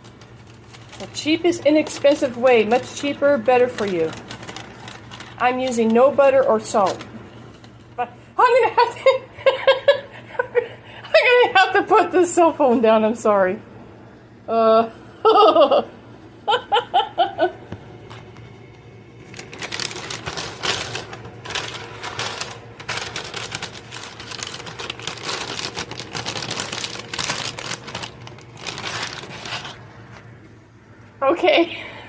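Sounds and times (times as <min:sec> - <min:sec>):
paper bag crinkling: 0:00.0 - 0:08.0, 0:19.2 - 0:30.3.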